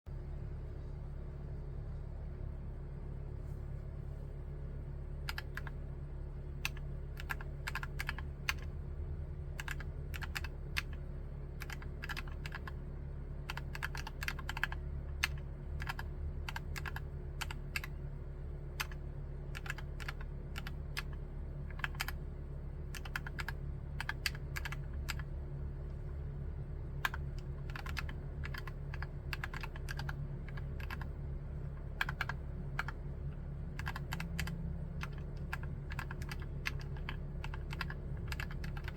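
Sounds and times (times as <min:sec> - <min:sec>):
low hum: 0:00.1 - 0:38.9
mechanical keyboard typing: 0:05.2 - 0:05.8, 0:06.6 - 0:08.8, 0:09.6 - 0:11.0, 0:11.6 - 0:12.8, 0:13.4 - 0:18.0, 0:18.8 - 0:22.2, 0:22.9 - 0:25.3, 0:27.0 - 0:38.9.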